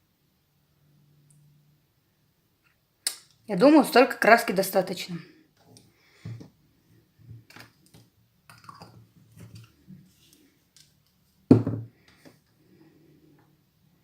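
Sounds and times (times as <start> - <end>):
knock: 11.5 - 11.9.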